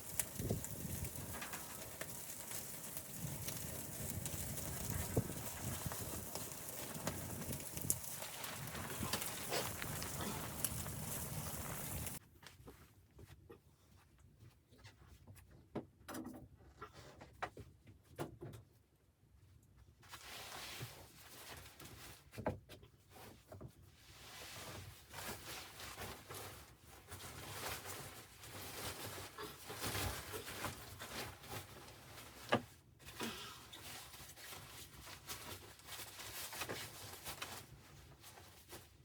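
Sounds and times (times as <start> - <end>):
rustling: 0.0 - 12.2, 24.1 - 39.0.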